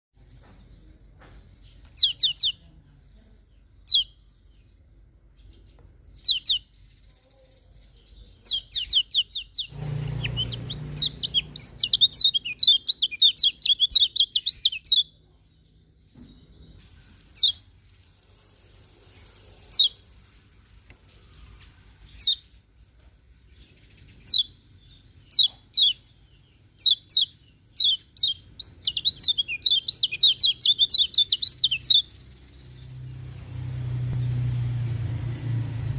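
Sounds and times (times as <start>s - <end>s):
bird chirping: 0.2s - 17.7s, 19.0s - 20.1s, 21.2s - 22.6s, 23.4s - 35.6s
low rumble: 32.7s - 35.9s.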